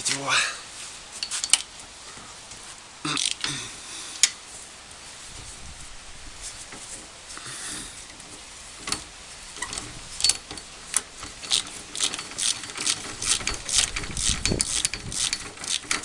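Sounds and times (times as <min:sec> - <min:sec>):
ratchet wrench clicking: 0:03.2 - 0:03.5, 0:10.2 - 0:16.0.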